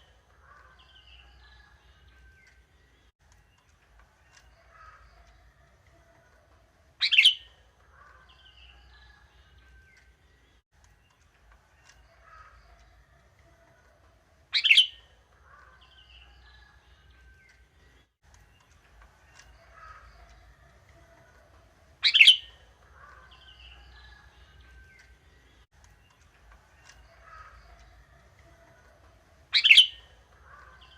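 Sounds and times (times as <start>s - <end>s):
faint bird chirping: 0.0s - 30.9s
bird calling: 7.0s - 8.4s, 14.5s - 15.8s, 22.0s - 23.6s, 29.5s - 30.9s.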